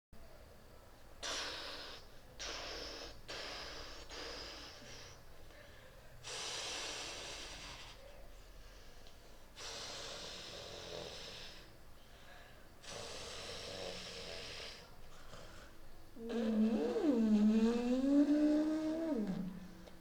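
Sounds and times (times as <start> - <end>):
rasping hissing breaths: 1.2 - 20.0.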